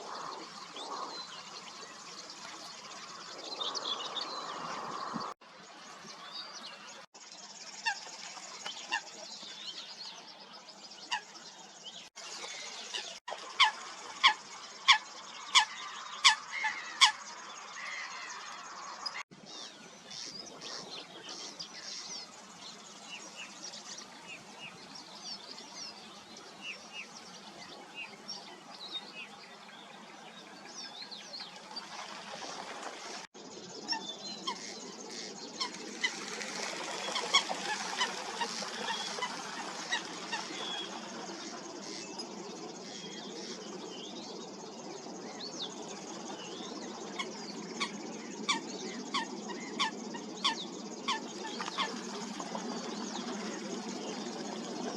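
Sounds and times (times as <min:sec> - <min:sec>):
waterbirds calling: 0:00.0 - 0:54.9.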